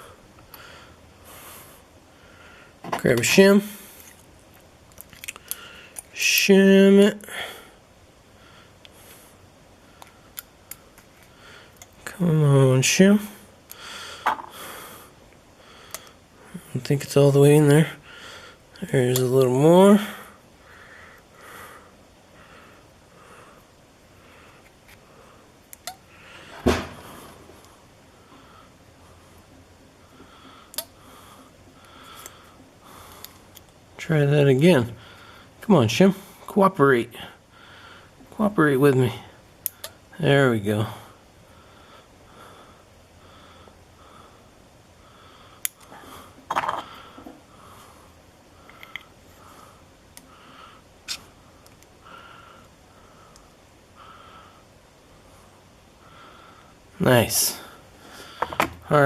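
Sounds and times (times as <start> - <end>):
soft breathing: 0.0 - 2.9, 5.3 - 6.0, 13.3 - 16.8, 17.9 - 18.7, 20.0 - 33.6, 34.9 - 35.6, 37.2 - 38.3, 40.8 - 58.6.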